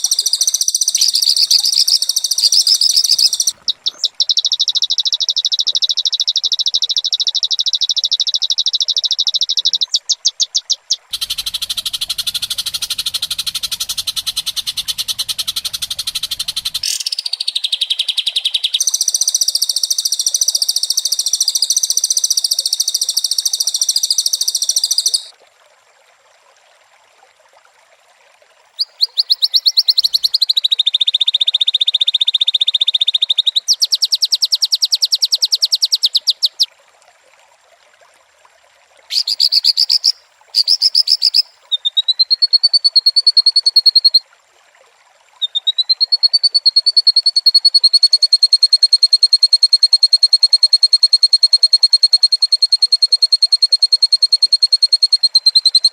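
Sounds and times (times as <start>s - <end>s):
bird singing fast trills: 0.0s - 25.3s, 28.8s - 32.6s, 33.2s - 36.7s, 39.1s - 44.2s, 45.4s - 47.8s.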